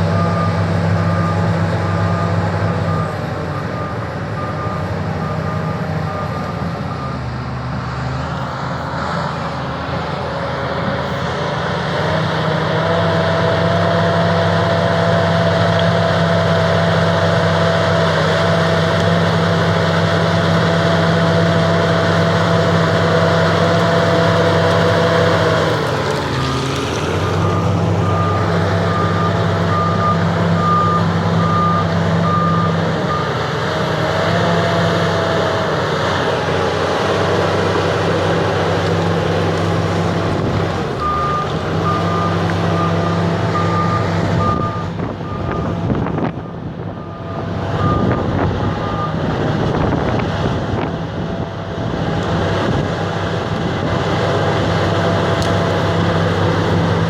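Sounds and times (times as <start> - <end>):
reversing alarm beeping: 0.0 - 7.7, 27.3 - 33.6, 40.9 - 49.4
bulldozer diesel engine: 0.0 - 57.0.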